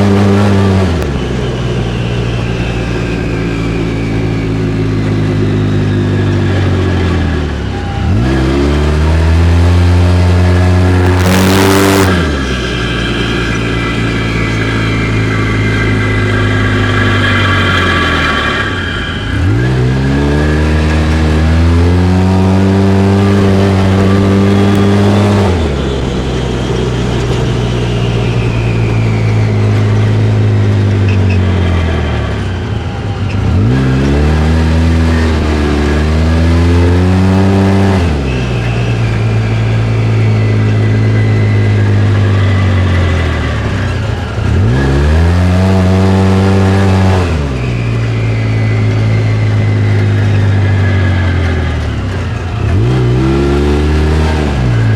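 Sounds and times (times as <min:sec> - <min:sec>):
engine revving: 0:00.0 - 0:54.9
whooshing grinding noise: 0:00.0 - 0:54.9.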